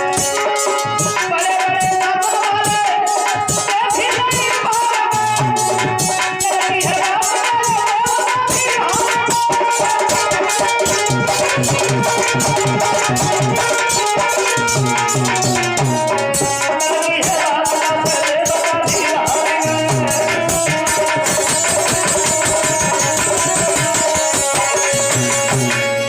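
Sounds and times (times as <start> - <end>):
hand drum and rattle percussion: 0.0 - 26.0
melodic lead instrument: 8.1 - 26.0.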